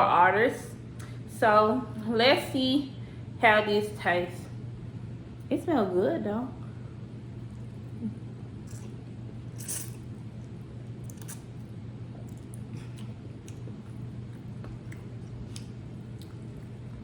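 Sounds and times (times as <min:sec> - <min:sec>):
steady low hum: 0:00.0 - 0:17.0
person chewing noodles: 0:07.3 - 0:17.0.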